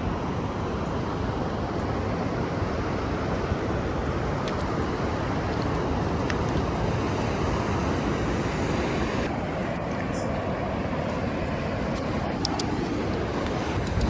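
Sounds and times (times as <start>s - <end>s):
wind on microphone: 4.0s - 14.0s.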